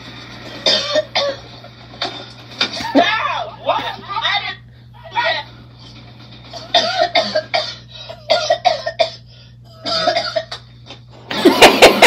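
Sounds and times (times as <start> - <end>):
person coughing: 6.6 - 10.6.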